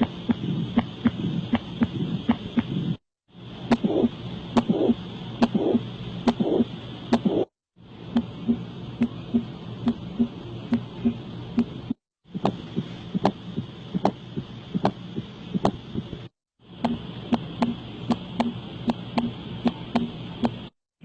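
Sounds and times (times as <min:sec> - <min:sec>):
heartbeat sounds: 0:00.0 - 0:03.0, 0:03.7 - 0:07.5, 0:08.2 - 0:17.8.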